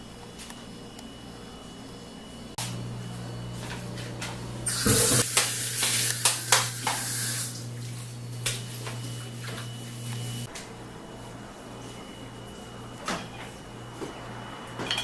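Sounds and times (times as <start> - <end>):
dishwasher motor hum: 0.0 - 15.0
water spraying and splashing: 4.7 - 8.1.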